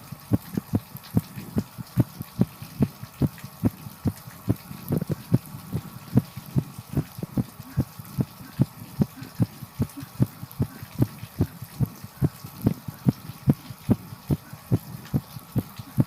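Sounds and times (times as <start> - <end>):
heartbeat thumps: 0.3 - 16.0.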